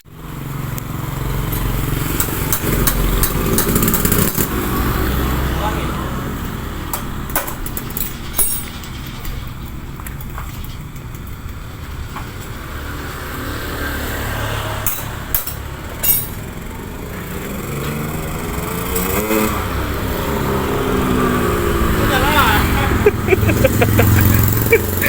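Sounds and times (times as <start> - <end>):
two-stroke motorcycle engine running: 0.1 - 5.1, 23.3 - 25.0.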